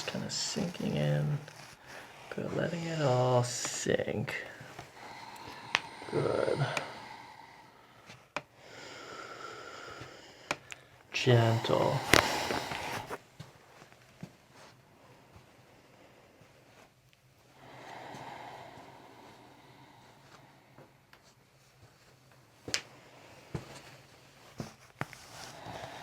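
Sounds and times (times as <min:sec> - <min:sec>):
person breathing gently: 0:00.0 - 0:13.2, 0:17.5 - 0:22.1, 0:24.6 - 0:26.0.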